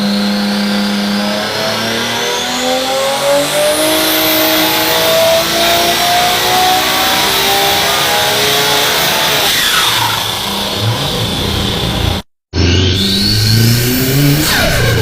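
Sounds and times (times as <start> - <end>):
car engine accelerating: 0.0 - 15.0
high turbo whistle: 9.5 - 15.0.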